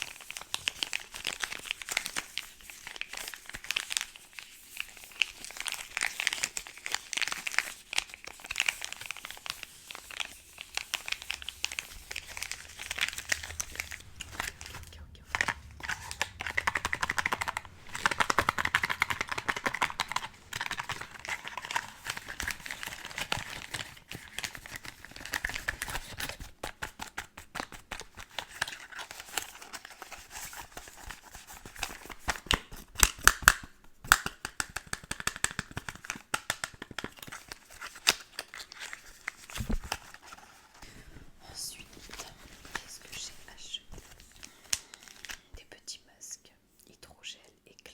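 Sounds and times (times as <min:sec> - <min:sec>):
packaging crinkling: 0:00.0 - 0:26.5, 0:34.3 - 0:40.8, 0:44.0 - 0:45.6.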